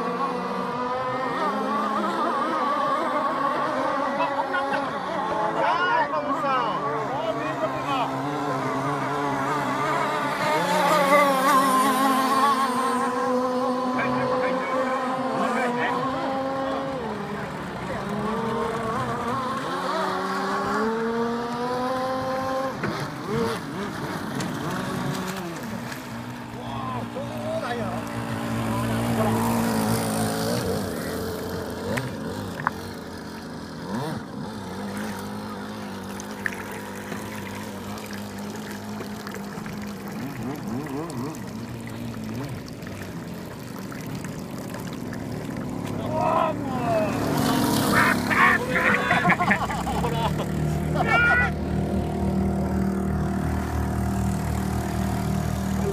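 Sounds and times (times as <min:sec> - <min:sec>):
motorboat engine humming: 0:00.0 - 0:55.9
water pouring and trickling: 0:34.7 - 0:46.2.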